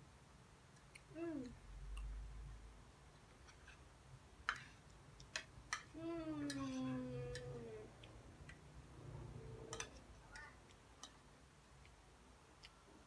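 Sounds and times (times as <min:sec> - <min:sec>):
person speaking: 0:05.9 - 0:08.0
faint clicks and ticks: 0:09.8 - 0:13.0.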